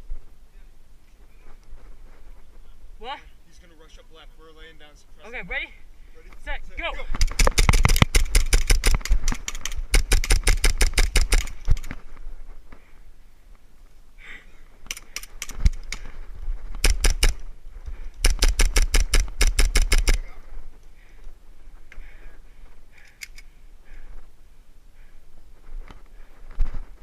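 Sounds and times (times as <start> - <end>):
airsoft guns firing full auto: 7.2 - 11.6, 16.8 - 17.4, 18.2 - 20.2.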